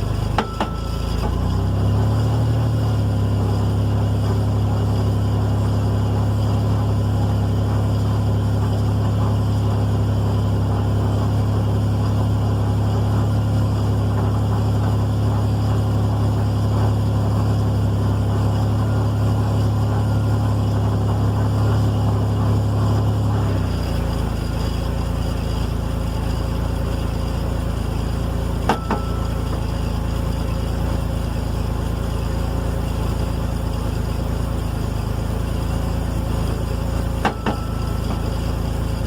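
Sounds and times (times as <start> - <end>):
drivetrain humming: 0.0 - 39.0
sharp metallic clunks: 0.3 - 1.4, 28.7 - 29.7, 37.2 - 38.6.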